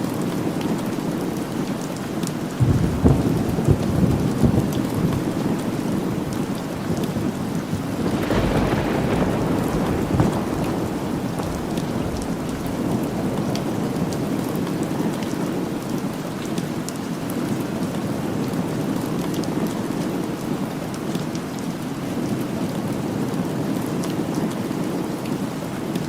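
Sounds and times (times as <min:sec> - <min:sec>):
steady rain: 0:00.0 - 0:26.0
thunder rolling and cracking: 0:02.6 - 0:15.8.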